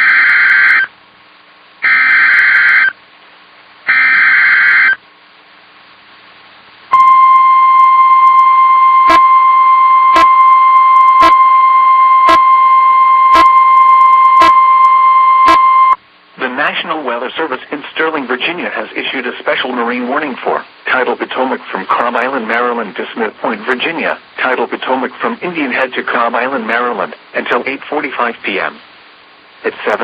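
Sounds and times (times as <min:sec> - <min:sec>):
steady warning alarm tone: 0:01.8 - 0:02.9, 0:03.9 - 0:05.0, 0:06.9 - 0:16.0.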